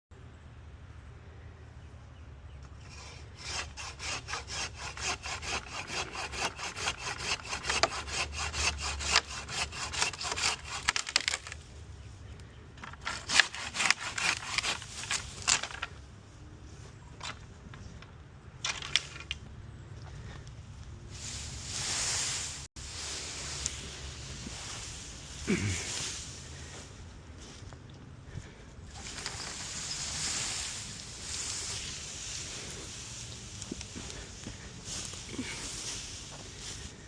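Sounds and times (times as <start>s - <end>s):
hand saw cutting branch: 2.8s - 11.6s, 13.0s - 15.8s, 28.4s - 37.0s.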